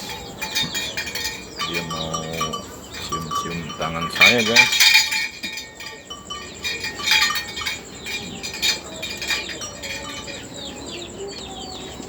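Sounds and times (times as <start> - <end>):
sharp metal clinks: 0.0 - 12.0
small birds chirping: 0.0 - 12.0.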